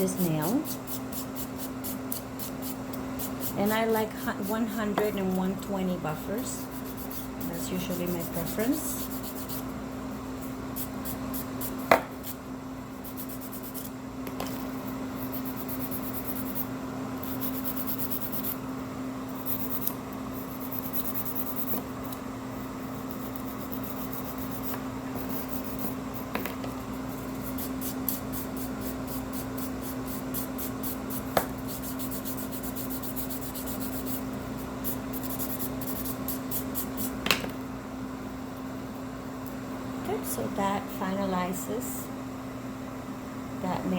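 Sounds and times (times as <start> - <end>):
steady low hum: 0.0 - 43.9
nail buffer scratching: 0.1 - 9.7, 13.0 - 13.9, 15.2 - 18.6, 19.4 - 22.2, 23.0 - 26.3, 27.0 - 37.2.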